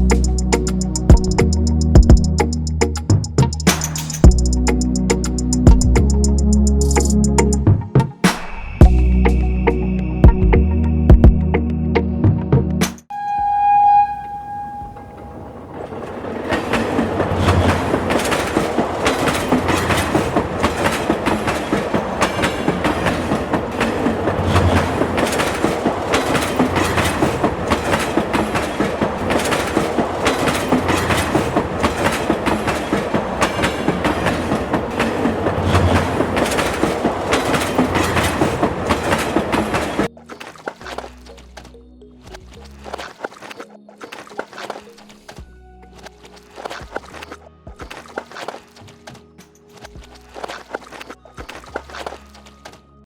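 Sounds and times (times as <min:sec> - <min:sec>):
train wheels clickety-clack: 0:00.0 - 0:07.1, 0:15.7 - 0:40.1
train horn: 0:13.1 - 0:15.8.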